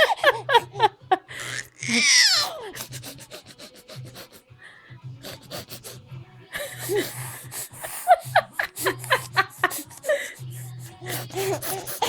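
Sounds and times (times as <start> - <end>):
squeaky vocal noises: 1.3 - 4.5, 8.8 - 12.0.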